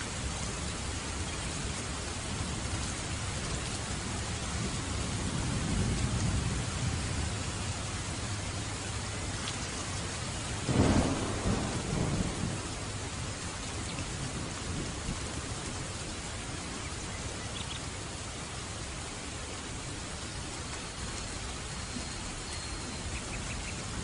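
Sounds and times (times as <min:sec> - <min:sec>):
heavy rain hissing: 0:00.0 - 0:24.0
thunder clap rumbling: 0:04.2 - 0:08.4, 0:09.9 - 0:15.8.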